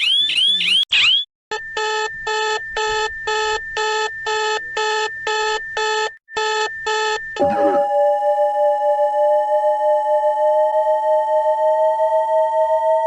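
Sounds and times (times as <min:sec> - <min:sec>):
electronic alarm beeping rapidly: 0:00.0 - 0:10.2
chime-like tone: 0:07.4 - 0:13.0
steady high tone: 0:07.4 - 0:13.0.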